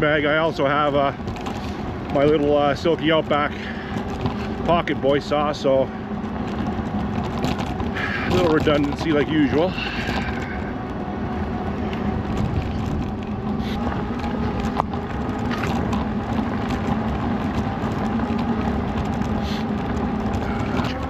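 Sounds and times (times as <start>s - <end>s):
tyre rumble on dirt: 0.6s - 10.7s
electric motor whine: 5.9s - 21.0s
wind on microphone: 9.7s - 21.0s.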